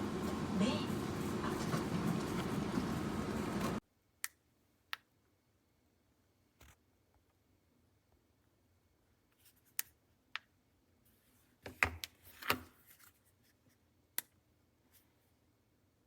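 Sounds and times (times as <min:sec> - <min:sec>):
scraping and rustling handling noise: 0:00.0 - 0:03.8.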